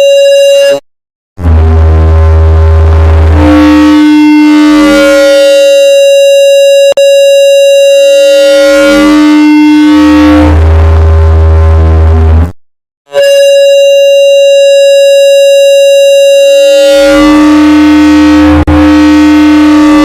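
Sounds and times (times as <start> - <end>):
synthetic tones switching pitch: 0.0 - 0.8
deep hum: 1.4 - 6.9, 8.7 - 12.6, 16.2 - 20.0.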